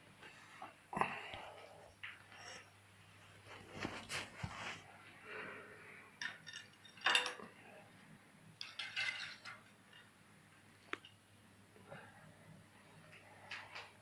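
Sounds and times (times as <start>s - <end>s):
metal objects clinking: 8.6s - 10.0s.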